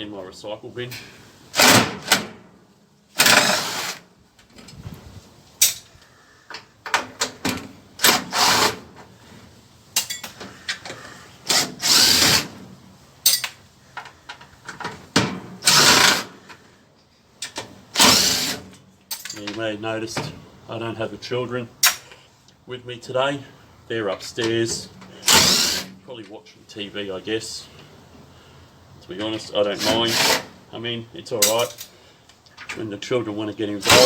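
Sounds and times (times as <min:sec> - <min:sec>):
power drill-driver bursts: 0:03.2 - 0:04.0, 0:08.0 - 0:08.8, 0:11.4 - 0:12.5, 0:15.6 - 0:16.3, 0:18.0 - 0:18.6, 0:25.2 - 0:25.9, 0:29.8 - 0:30.5.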